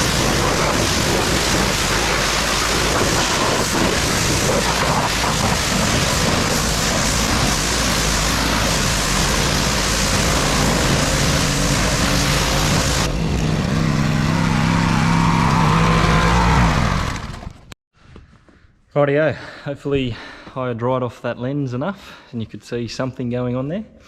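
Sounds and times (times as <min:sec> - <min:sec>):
pressure washer spraying water: 0:00.0 - 0:16.9
washer motor hum: 0:00.0 - 0:17.6.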